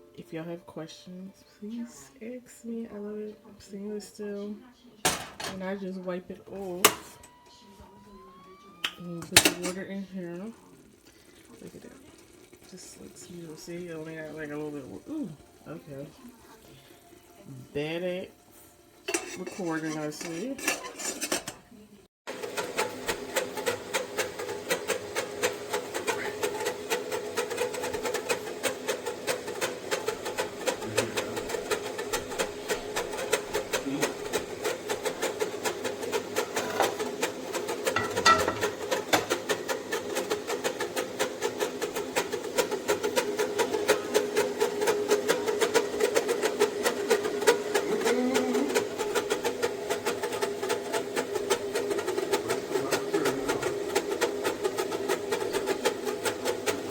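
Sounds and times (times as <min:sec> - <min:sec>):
kettle rattling on a burner: 0:09.2 - 0:10.4, 0:19.0 - 0:21.6, 0:22.3 - 0:48.0.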